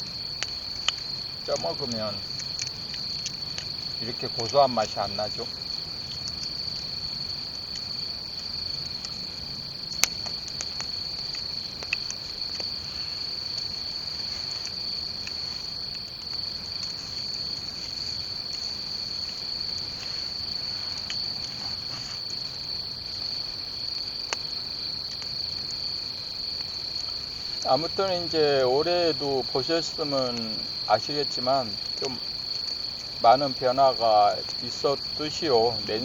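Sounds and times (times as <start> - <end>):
crickets chirping: 0.0 - 36.0
sharp snaps: 9.9 - 13.8.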